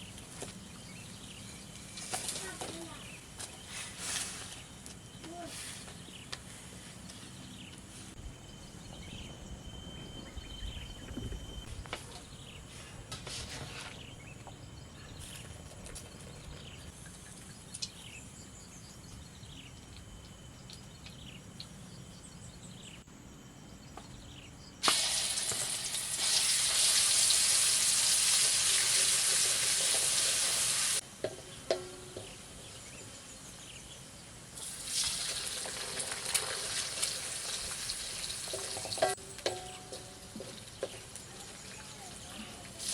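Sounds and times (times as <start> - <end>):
oil sizzling as food fries: 24.8 - 31.0, 34.6 - 42.9.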